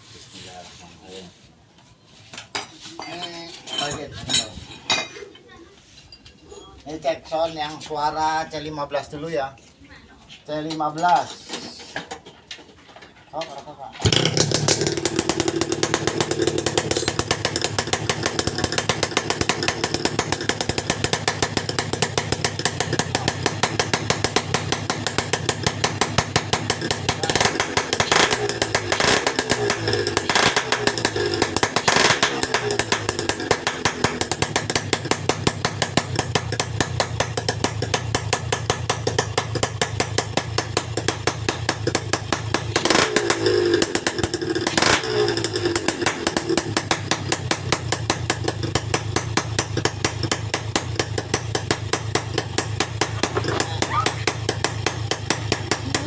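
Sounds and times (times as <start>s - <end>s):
small engine rattling: 12.1s - 56.0s.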